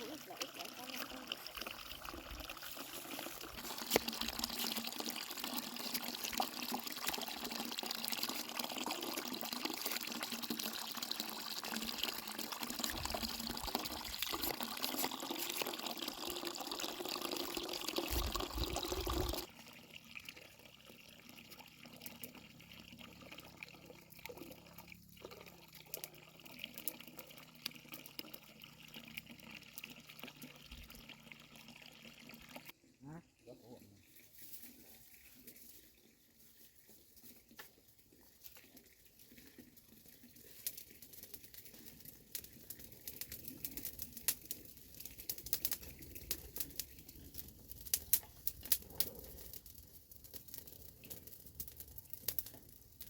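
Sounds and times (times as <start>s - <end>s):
water running: 0.0s - 19.5s.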